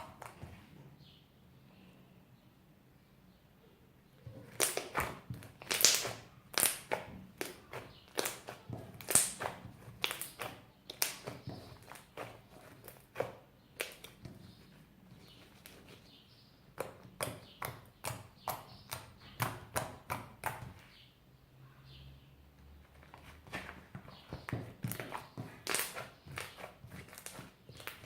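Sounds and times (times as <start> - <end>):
slime popping and clicking: 4.5 - 8.4, 9.0 - 11.2.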